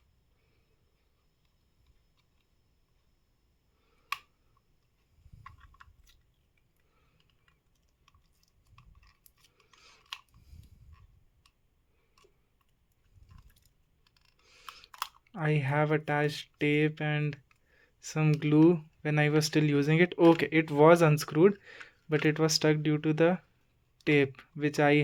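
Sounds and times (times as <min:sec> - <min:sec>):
small plastic clicks: 0:03.9 - 0:15.4.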